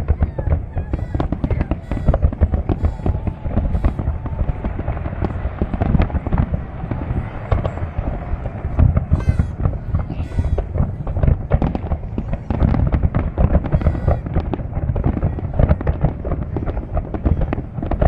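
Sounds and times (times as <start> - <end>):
deep fireworks booms: 0.0 - 18.0
fireworks bangs and crackling: 0.0 - 18.0.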